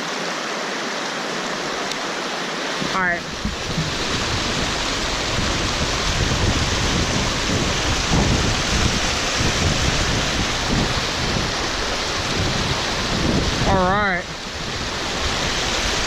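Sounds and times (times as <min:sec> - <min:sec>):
rushing stream water: 0:00.0 - 0:16.0
low rumble: 0:02.8 - 0:16.0.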